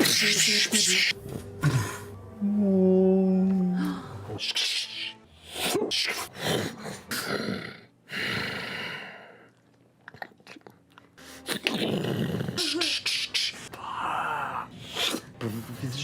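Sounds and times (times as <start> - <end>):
breathy mouth hissing: 0.0 - 2.2, 11.2 - 15.3.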